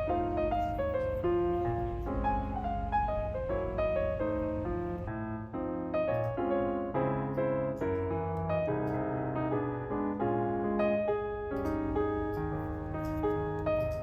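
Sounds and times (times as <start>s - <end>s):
piano music: 0.0s - 14.0s.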